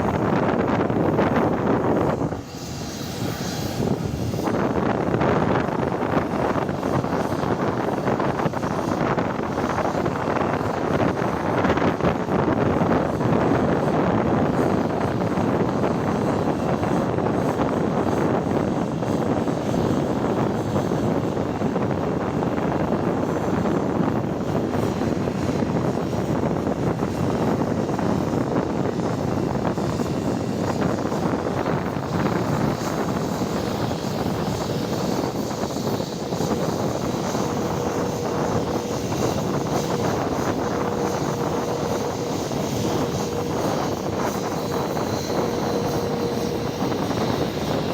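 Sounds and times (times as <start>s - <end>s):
airliner engines running: 0.0s - 47.9s
faint steady whine: 0.0s - 47.9s.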